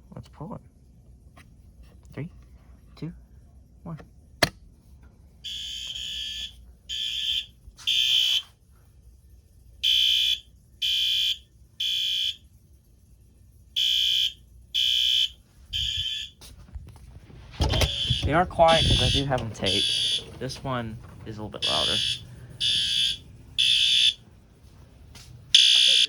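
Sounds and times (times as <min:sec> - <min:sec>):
muffled fire alarm horns: 0:05.4 - 0:08.6, 0:09.8 - 0:12.5, 0:13.8 - 0:16.5, 0:17.5 - 0:24.3, 0:25.5 - 0:26.0.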